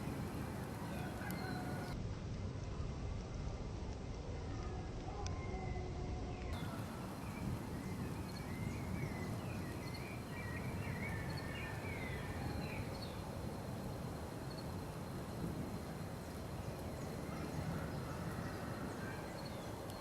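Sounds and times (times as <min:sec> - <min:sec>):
birds chirping: 0:00.0 - 0:02.0, 0:06.5 - 0:20.0
steady low rumble: 0:00.0 - 0:05.0, 0:06.5 - 0:20.0.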